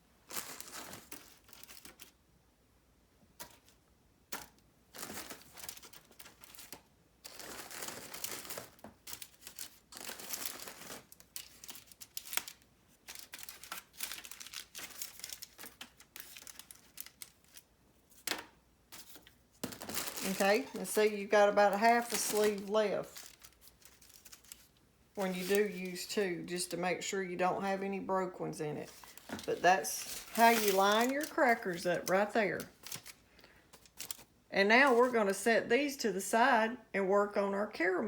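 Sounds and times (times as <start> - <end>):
foil and packaging crinkling: 0.2 - 2.2, 4.9 - 18.3, 19.0 - 26.8, 28.8 - 35.2.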